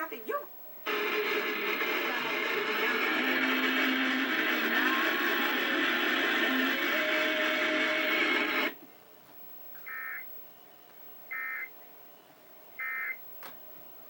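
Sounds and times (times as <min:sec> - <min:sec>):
television audio: 0:00.0 - 0:14.0
high electronic data bursts: 0:00.9 - 0:08.8.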